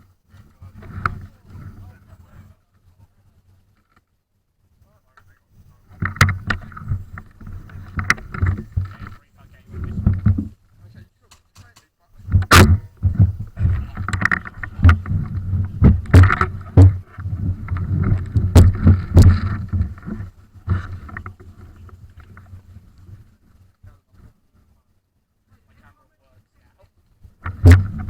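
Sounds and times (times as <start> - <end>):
sharp knocks and clicks: 6.0 - 9.2, 11.3 - 22.5, 27.4 - 28.0.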